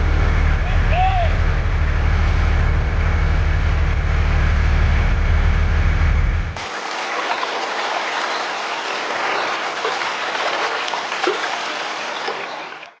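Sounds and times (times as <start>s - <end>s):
low rumble: 0.0s - 6.6s
running water splashing: 6.6s - 13.0s.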